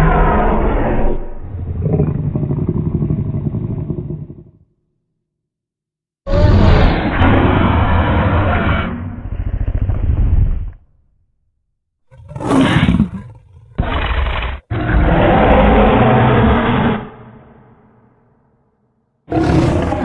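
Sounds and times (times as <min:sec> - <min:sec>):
creature roaring: 0:00.0 - 0:04.7, 0:06.3 - 0:10.0, 0:12.2 - 0:17.6, 0:19.3 - 0:20.0.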